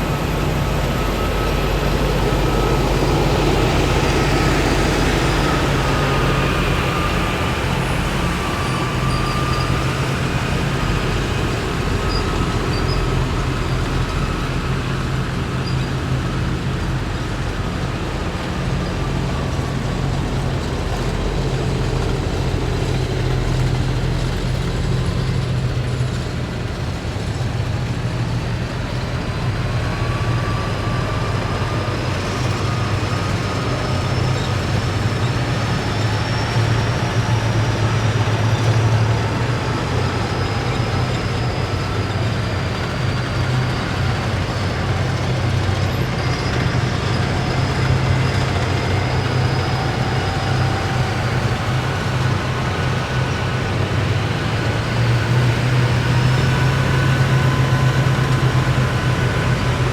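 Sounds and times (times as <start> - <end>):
faint high whines: 0.0 - 25.3
heavy diesel vehicles driving past: 0.0 - 59.9.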